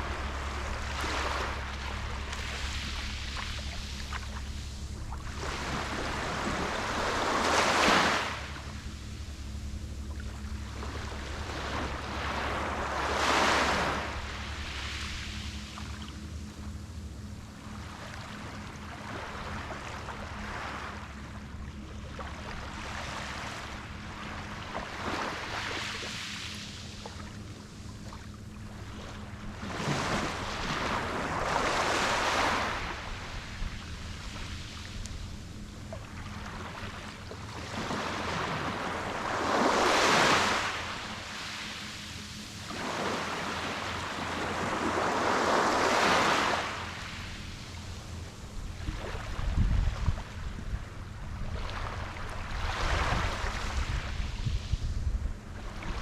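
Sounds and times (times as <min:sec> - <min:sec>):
steady low hum: 0:00.0 - 0:56.0
waves breaking on a beach: 0:00.0 - 0:56.0.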